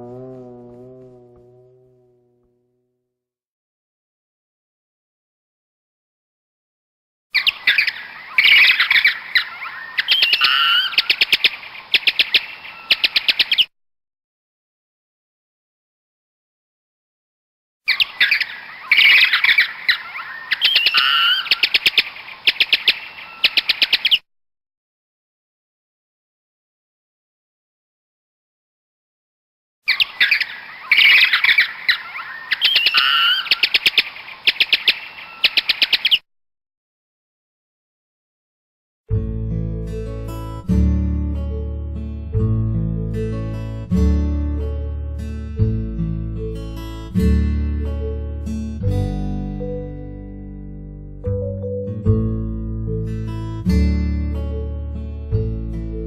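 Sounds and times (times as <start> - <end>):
sharp clicking calls: 7.4 - 13.7, 17.9 - 24.2, 29.9 - 36.2
bats squeaking and chattering: 29.9 - 36.2.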